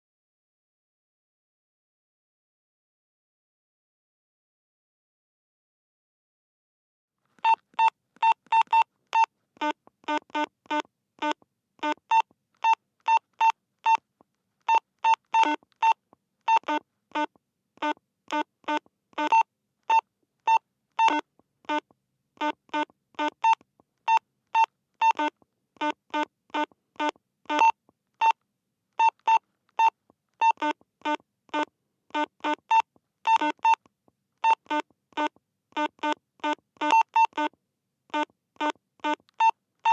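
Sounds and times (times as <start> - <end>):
walkie-talkie beeps: 14.7 - 21.8, 22.4 - 28.4, 38.2 - 39.9.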